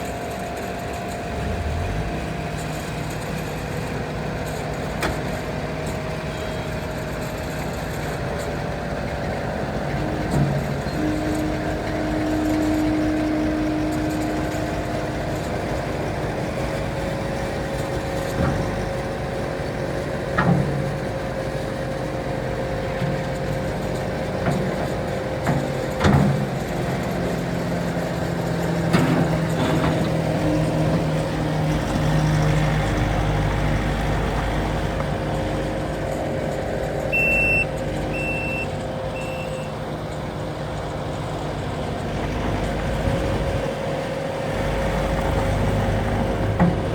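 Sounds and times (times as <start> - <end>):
diesel engine running: 0.0 - 46.9
short beeps: 37.1 - 39.8.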